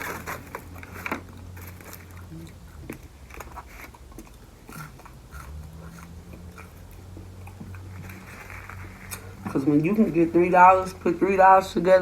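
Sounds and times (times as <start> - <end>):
person chewing food: 0.0 - 9.7
steady low hum: 0.0 - 12.0.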